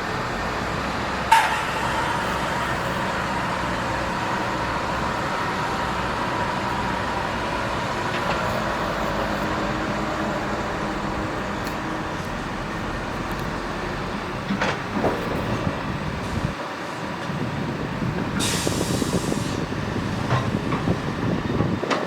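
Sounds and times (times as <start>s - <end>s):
excavator engine running: 0.0s - 22.0s
thin high whine: 1.2s - 15.0s
sharp metal clank: 1.3s - 3.1s.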